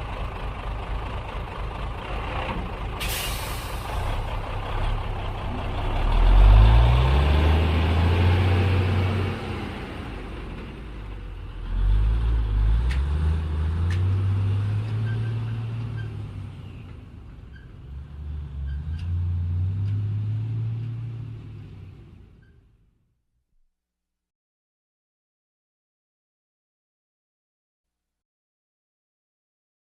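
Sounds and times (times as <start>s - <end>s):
truck engine pulling away: 0.0s - 22.7s.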